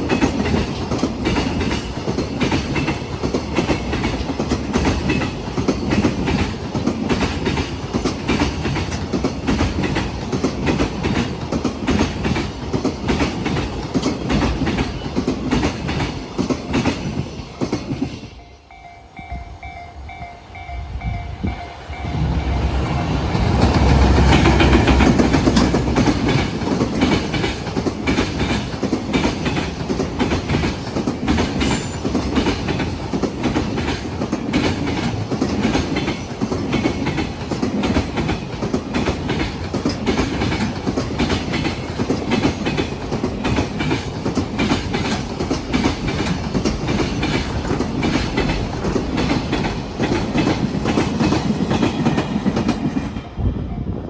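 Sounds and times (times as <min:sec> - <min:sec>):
freight train locomotive passing: 0:00.0 - 0:54.0
level crossing warning bell: 0:17.1 - 0:23.5
freight wagons clattering over rail joints: 0:23.4 - 0:53.2.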